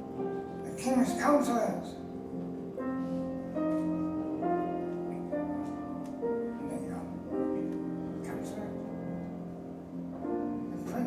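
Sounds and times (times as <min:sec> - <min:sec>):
slow gentle piano chords: 0:00.0 - 0:11.0.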